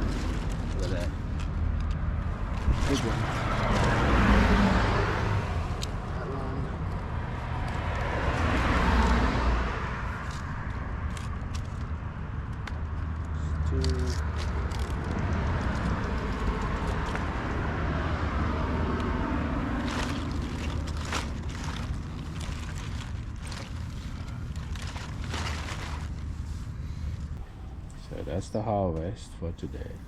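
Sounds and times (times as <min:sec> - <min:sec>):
traffic rumble: 0:00.0 - 0:30.0
vehicle passing: 0:00.0 - 0:30.0.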